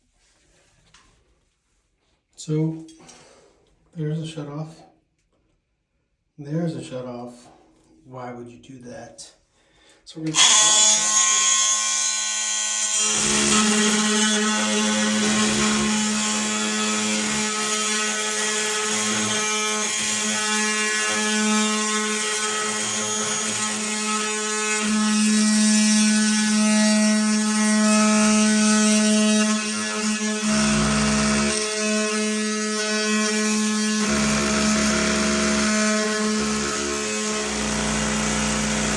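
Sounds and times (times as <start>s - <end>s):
power tool cutting tile: 10.3s - 38.9s.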